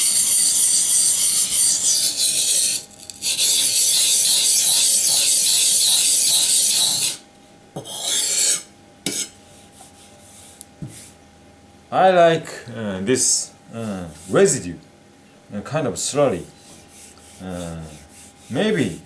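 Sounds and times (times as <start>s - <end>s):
knife scraping on whetstone: 0.0s - 7.2s, 7.8s - 11.1s, 16.3s - 19.0s.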